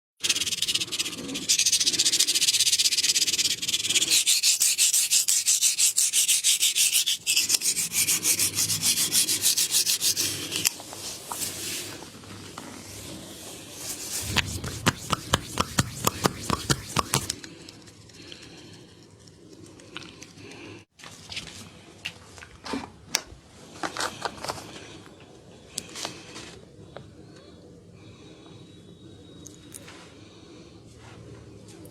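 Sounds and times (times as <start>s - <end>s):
rhythmic rubbing strokes: 0.2s - 12.2s, 12.8s - 17.4s.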